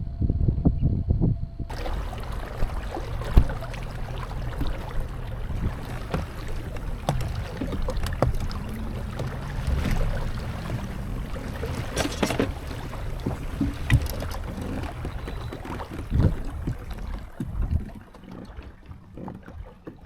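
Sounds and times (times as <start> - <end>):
boat engine low rumble: 0.0 - 20.0
light knocks and taps: 5.6 - 10.9, 11.7 - 17.8.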